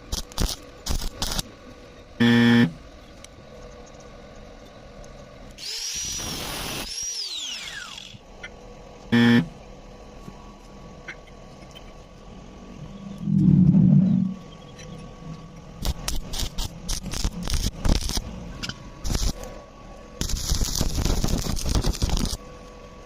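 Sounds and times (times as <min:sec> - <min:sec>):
loud low hum: 0:00.0 - 0:03.1, 0:07.7 - 0:10.1, 0:12.1 - 0:23.0
short loud buzz: 0:02.2 - 0:02.8, 0:09.2 - 0:09.5
power tool whining: 0:05.6 - 0:08.2.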